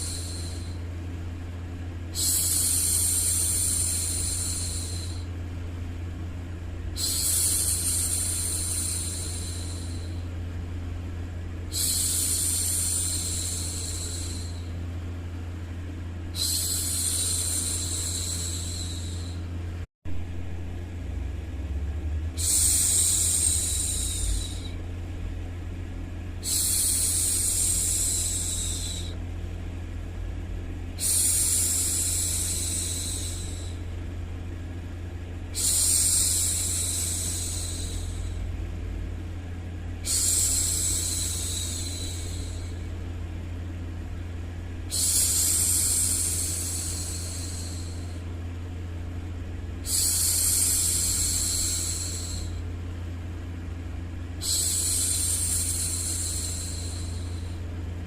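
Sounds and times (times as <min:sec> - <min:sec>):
low white noise hum: 0:00.0 - 0:58.0
woman shushing: 0:22.4 - 0:24.8.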